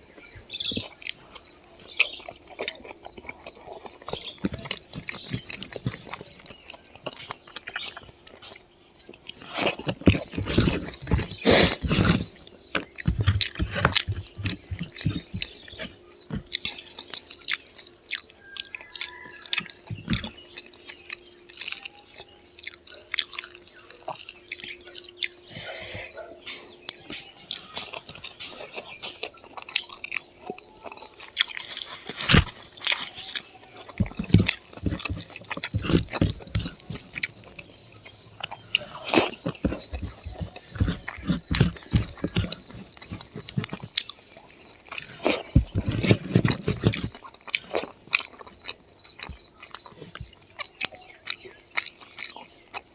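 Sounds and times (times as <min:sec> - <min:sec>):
chewing food close-up: 0:00.0 - 0:52.9
mouth clicks and smacks: 0:00.7 - 0:25.4.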